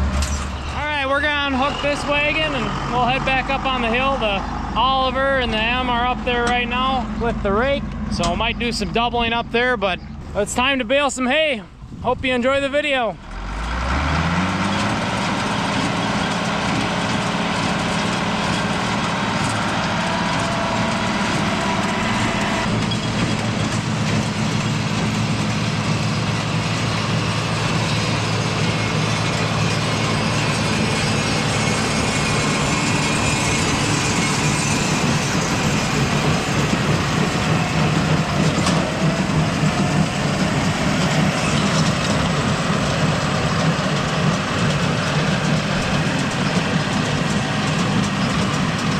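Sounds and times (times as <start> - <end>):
tractor engine running: 0.0 - 48.9.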